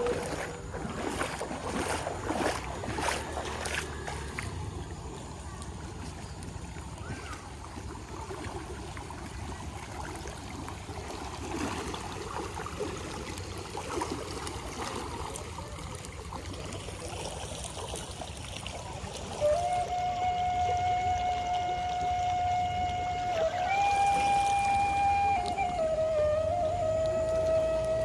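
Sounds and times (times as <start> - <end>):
steady pitched tone: 0.0 - 1.0
floodwater rushing and gurgling: 0.0 - 28.0.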